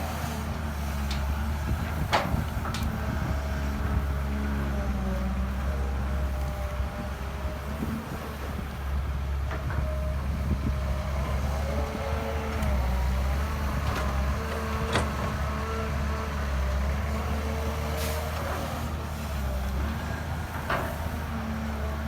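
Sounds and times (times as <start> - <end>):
excavator diesel engine rumbling: 0.0 - 22.0.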